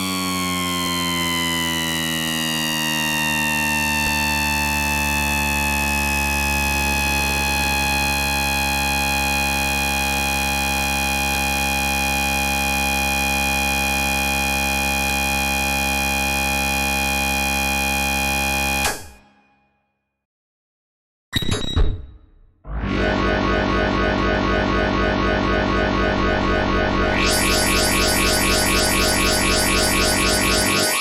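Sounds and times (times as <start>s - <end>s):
dense synthesized tones sliding down: 22.7s - 31.0s.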